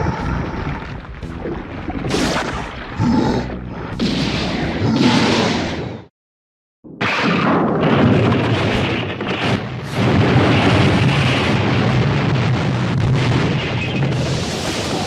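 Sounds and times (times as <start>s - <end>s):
dense rumbling explosion: 7.2s - 15.0s.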